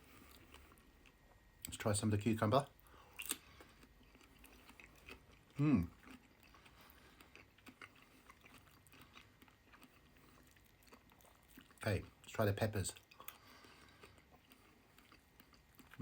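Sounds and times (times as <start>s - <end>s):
chewing cucumber: 3.1s - 12.3s, 12.9s - 16.0s.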